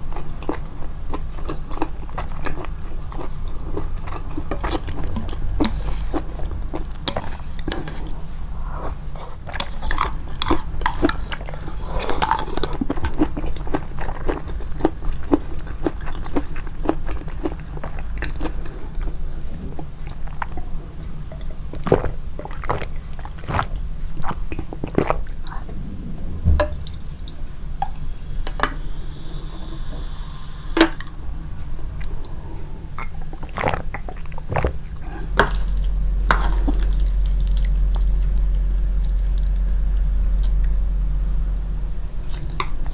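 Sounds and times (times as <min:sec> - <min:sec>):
wet chewing and smacking: 0:00.0 - 0:08.3, 0:09.2 - 0:25.8, 0:33.0 - 0:40.9
slurping noodles: 0:21.8 - 0:26.4, 0:31.8 - 0:38.2.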